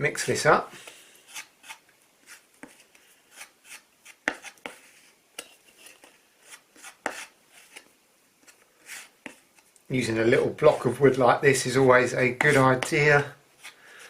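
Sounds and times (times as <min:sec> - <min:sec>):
wood filler mixing scrapes: 0:12.1 - 0:14.0.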